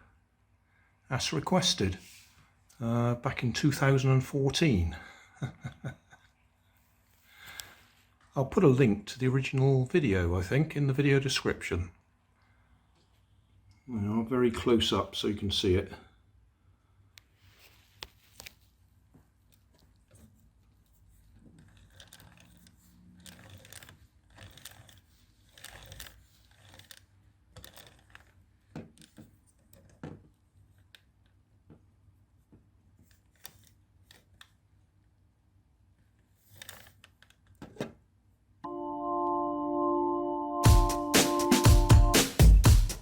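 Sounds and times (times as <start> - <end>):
plastic ratchet clicking: 21.6 - 30.0.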